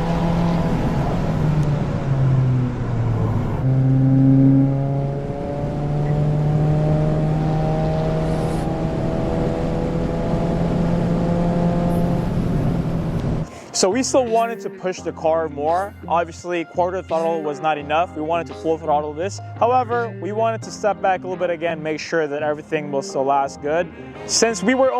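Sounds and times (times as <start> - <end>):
car engine pulling through revs: 0.0 - 13.5.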